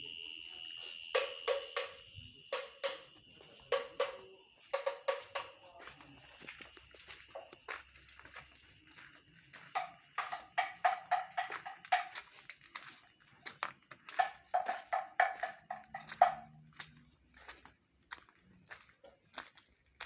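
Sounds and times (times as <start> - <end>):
rhythmic ringing knocks: 1.0 - 6.3, 9.6 - 12.4, 13.6 - 16.8.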